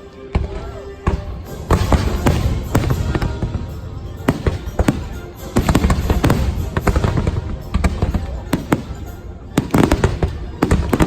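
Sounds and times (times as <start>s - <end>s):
patriotic music over speakers: 0.0s - 11.0s
fireworks bursting: 0.4s - 11.0s.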